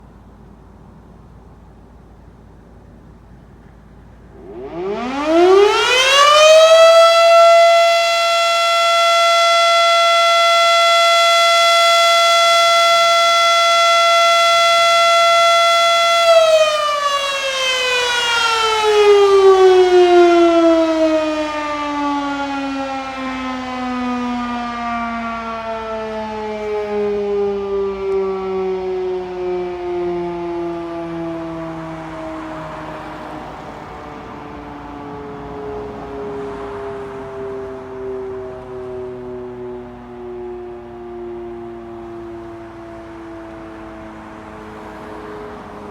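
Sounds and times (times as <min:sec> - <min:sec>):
warning siren winding: 0:04.4 - 0:31.7.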